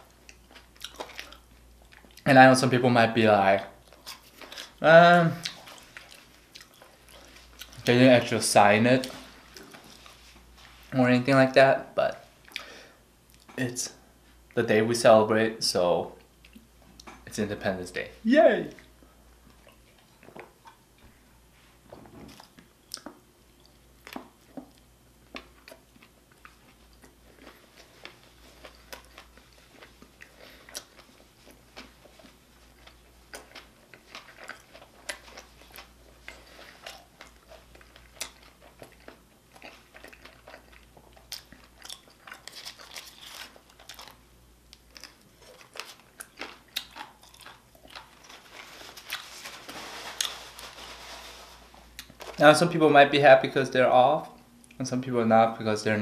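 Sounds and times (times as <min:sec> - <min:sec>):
person chewing food: 0:00.0 - 0:02.3, 0:03.7 - 0:04.8, 0:05.4 - 0:07.9, 0:12.4 - 0:13.5, 0:18.8 - 0:21.3, 0:22.3 - 0:51.1.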